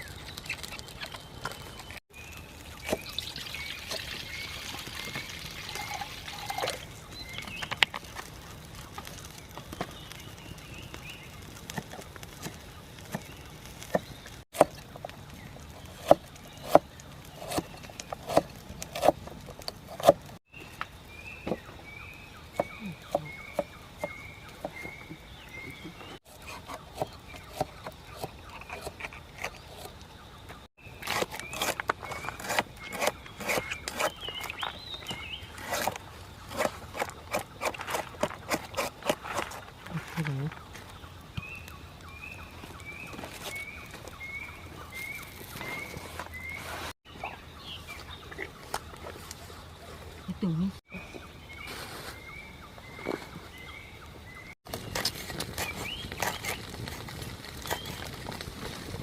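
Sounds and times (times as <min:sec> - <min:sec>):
bird singing: 0:00.0 - 0:19.1, 0:19.9 - 0:56.8
water pouring: 0:02.2 - 0:07.0.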